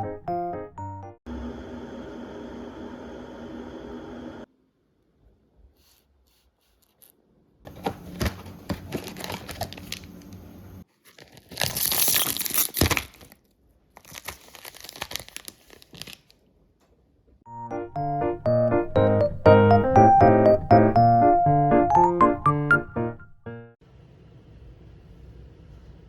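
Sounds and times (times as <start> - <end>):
packaging crinkling and crackling: 7.7 - 16.5.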